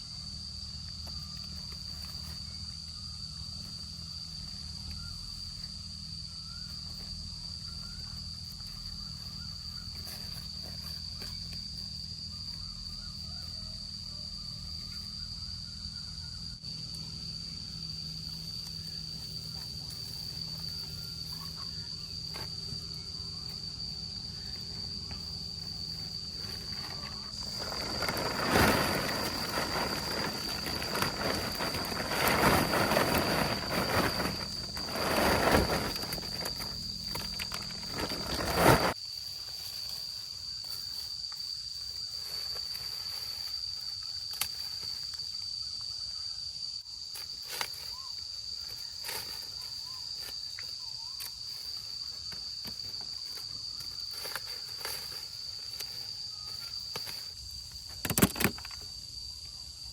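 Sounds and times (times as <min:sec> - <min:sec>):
high-pitched insect drone: 0:00.0 - 0:59.9
rustling and handling noise: 0:18.5 - 0:45.3, 0:47.1 - 0:58.9.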